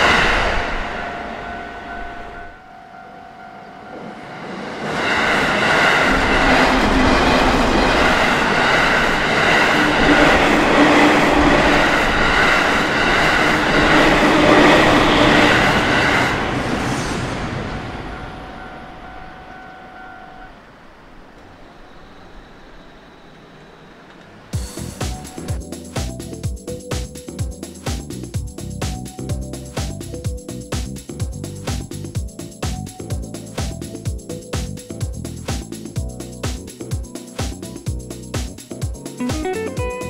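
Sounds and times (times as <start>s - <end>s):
level crossing warning bell ringing: 0.9s - 10.4s, 17.8s - 20.6s
train wheels clacking over rail joints: 4.8s - 16.8s.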